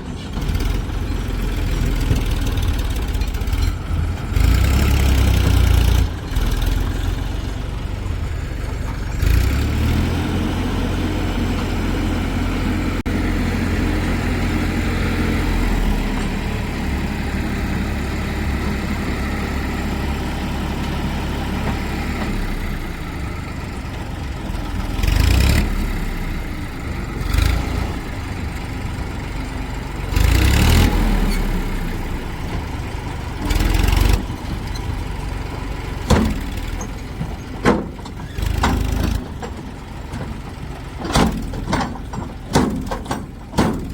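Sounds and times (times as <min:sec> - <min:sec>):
diesel machinery engines running: 0:00.0 - 0:43.9.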